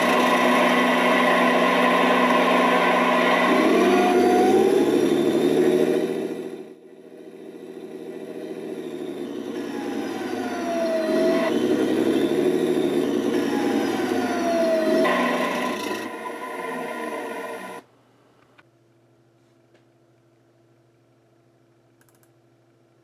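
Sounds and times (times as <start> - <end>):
simulated tank engine rumbling: 0.0 - 17.8
falling whines: 0.0 - 17.9.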